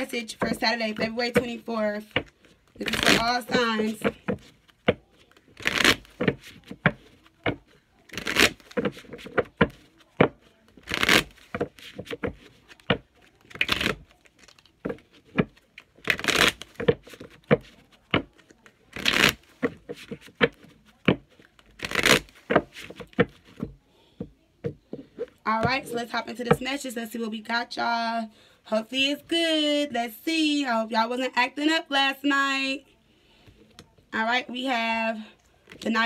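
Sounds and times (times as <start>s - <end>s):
cards shuffling: 0.4s - 23.7s.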